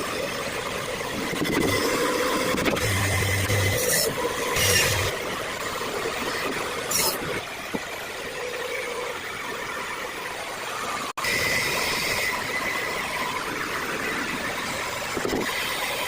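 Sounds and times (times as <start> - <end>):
power tool whining: 1.3 - 5.2.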